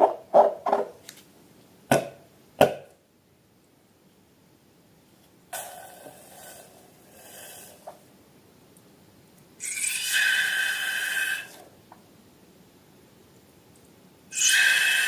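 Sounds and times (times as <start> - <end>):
balloon squealing: 14.3 - 15.0.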